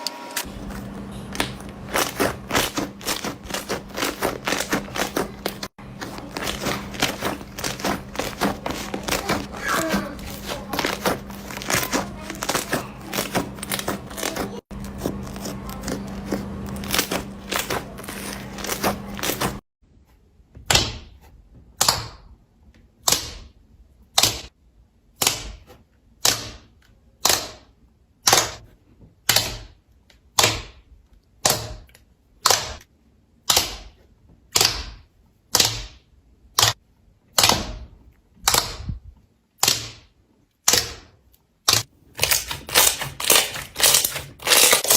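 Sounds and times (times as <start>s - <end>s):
slime crackling: 0.5s - 19.6s, 41.7s - 44.9s.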